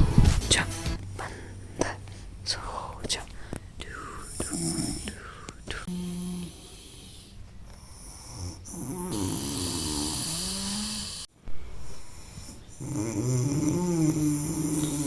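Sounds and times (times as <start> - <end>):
man snoring loudly: 8.1 - 11.3, 12.8 - 15.0.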